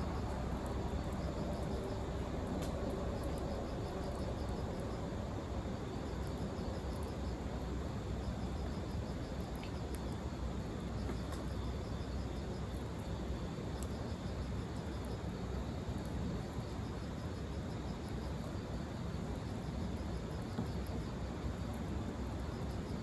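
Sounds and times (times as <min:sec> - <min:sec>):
steady low rumble: 0:00.0 - 0:09.6
insects chirping in pulses: 0:00.0 - 0:23.0.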